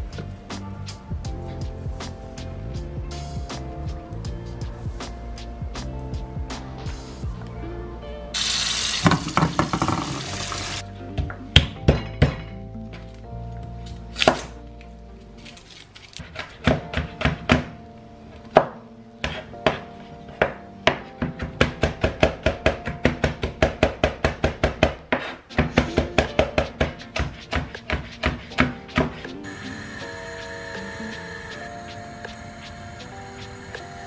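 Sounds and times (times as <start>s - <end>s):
background music: 0.0s - 34.0s
knife chopping on cutting board: 21.2s - 29.2s.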